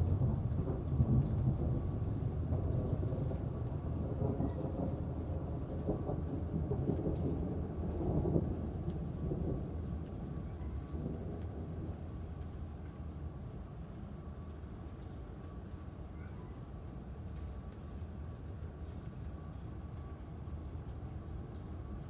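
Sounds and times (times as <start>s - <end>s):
rolling thunder: 0.0s - 12.4s
steady rain: 0.0s - 22.0s.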